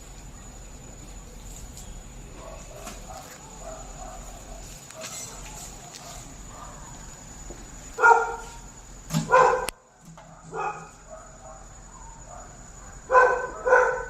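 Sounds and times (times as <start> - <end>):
dog barking: 2.4 - 7.0, 8.0 - 8.6, 9.2 - 14.0.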